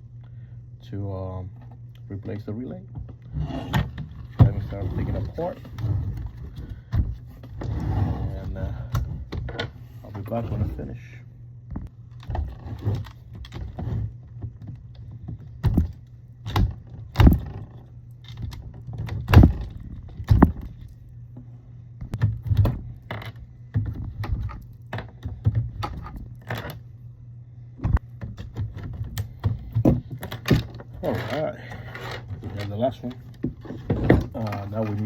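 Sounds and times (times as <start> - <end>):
steady low hum: 0.0 - 35.0
plastic parts clicking and rattling: 27.9 - 35.0.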